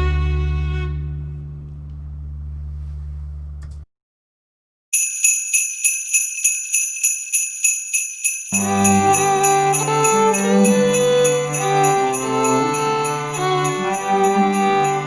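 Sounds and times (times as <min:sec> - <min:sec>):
bowed string low note: 0:00.0 - 0:03.8
jingle bells shaking: 0:05.0 - 0:15.0.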